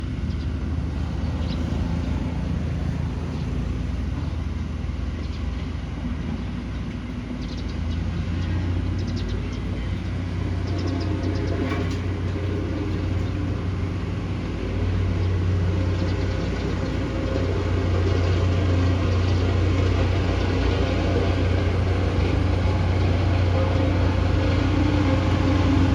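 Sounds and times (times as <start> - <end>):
bulldozer diesel engine droning: 0.0 - 25.9.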